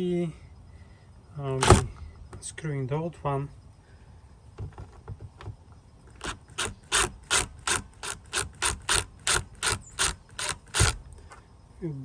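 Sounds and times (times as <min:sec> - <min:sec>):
screwdriver clicking on screw: 0:01.6 - 0:01.9, 0:06.2 - 0:11.2.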